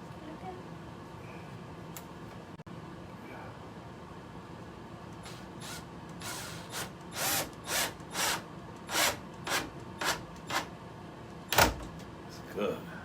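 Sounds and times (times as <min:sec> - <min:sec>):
power drill driving a screw: 0:05.2 - 0:10.7.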